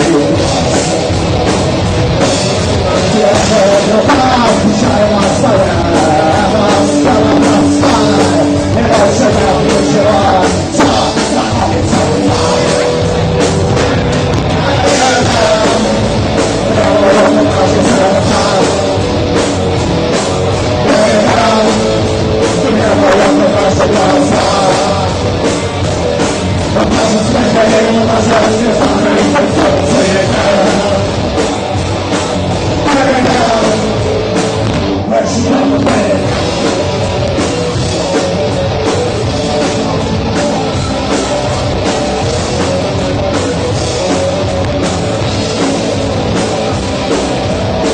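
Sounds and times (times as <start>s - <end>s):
drums: 0.0s - 47.9s
rock band playing live: 0.0s - 47.9s
person singing: 2.7s - 13.2s, 14.5s - 19.4s, 20.7s - 25.7s, 26.6s - 31.5s, 32.8s - 34.2s, 35.0s - 43.3s.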